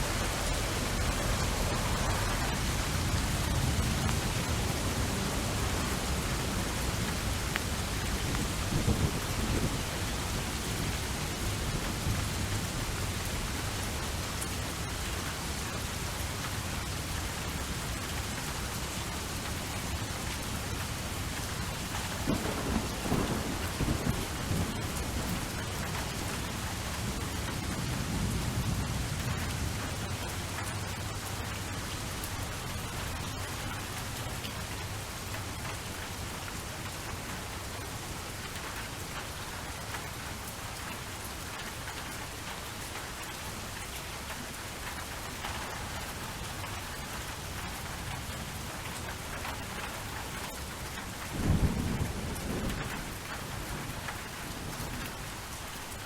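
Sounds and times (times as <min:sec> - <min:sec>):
thunder rumbling: 0:00.0 - 0:14.3, 0:22.0 - 0:30.3, 0:51.2 - 0:55.2
steady rain: 0:00.0 - 0:56.0.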